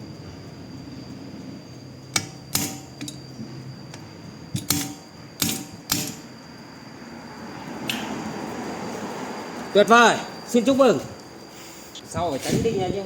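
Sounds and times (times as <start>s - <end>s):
metal tools knocking on metal: 4.5s - 6.3s.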